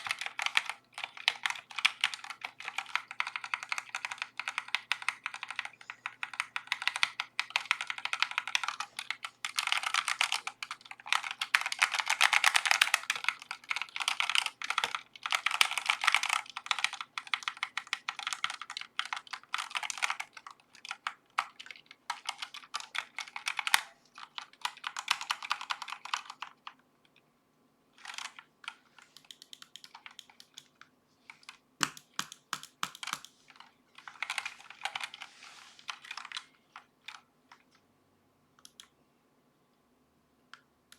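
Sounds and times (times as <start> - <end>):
mechanical keyboard typing: 0.0 - 26.8, 28.0 - 37.8.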